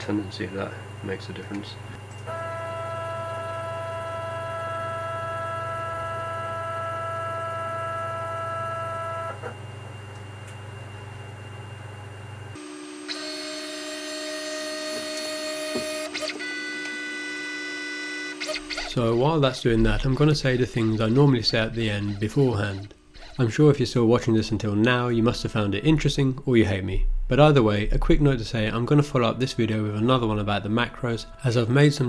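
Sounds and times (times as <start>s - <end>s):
stepper motors whining: 12.6s - 26.2s.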